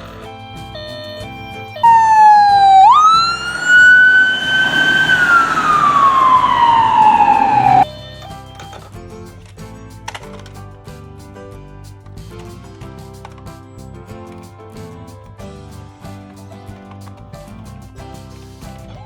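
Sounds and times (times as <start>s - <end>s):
soft background music: 0.0s - 19.0s
emergency vehicle siren wail: 0.3s - 7.9s.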